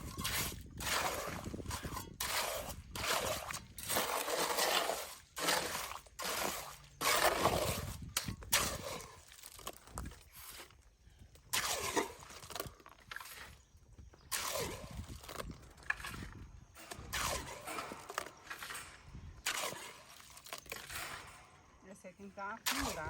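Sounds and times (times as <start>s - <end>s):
gritty stone and mortar scrapes: 0.0s - 23.0s.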